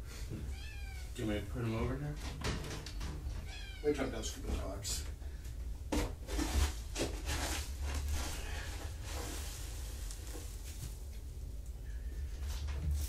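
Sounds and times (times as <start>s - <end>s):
litter scooper scraping litter: 6.3s - 11.0s.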